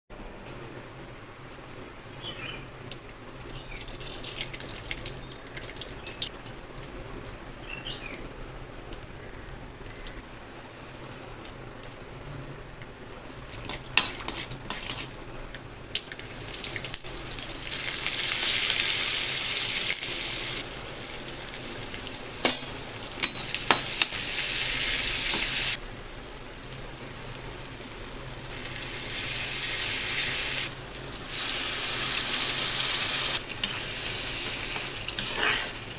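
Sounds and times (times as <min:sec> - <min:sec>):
stirring in a pan: 0:13.5 - 0:15.2, 0:33.4 - 0:35.9
hot oil sizzling in a pan: 0:16.0 - 0:35.9
utensils clinking: 0:22.4 - 0:24.1.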